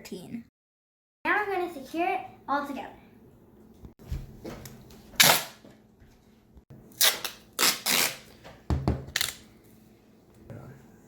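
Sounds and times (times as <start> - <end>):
duct tape ripping: 5.2 - 5.6, 6.9 - 8.3, 9.1 - 9.4.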